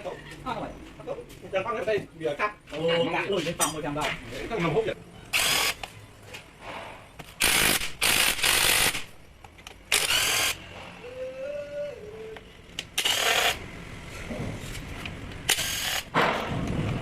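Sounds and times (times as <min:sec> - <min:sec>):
power tool bursts: 0:05.4 - 0:05.8, 0:07.4 - 0:09.1, 0:09.9 - 0:10.6, 0:13.0 - 0:13.6, 0:15.5 - 0:16.2.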